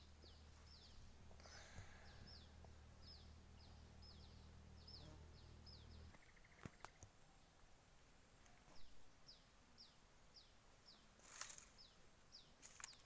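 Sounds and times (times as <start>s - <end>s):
low hum: 0.0s - 6.3s
bird chirping: 0.0s - 7.5s, 8.4s - 13.0s.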